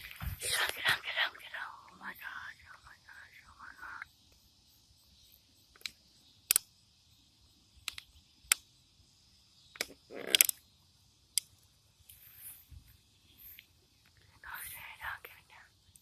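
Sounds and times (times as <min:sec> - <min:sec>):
faint high-pitched insect hum: 0:00.0 - 0:16.0
sharp clicks and snaps: 0:05.7 - 0:06.7, 0:07.8 - 0:08.7, 0:09.7 - 0:10.6, 0:11.3 - 0:12.2.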